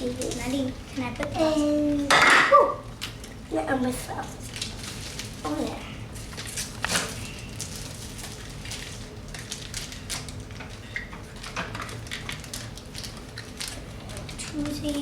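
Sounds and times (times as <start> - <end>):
plastic packaging crinkling: 4.2 - 15.0.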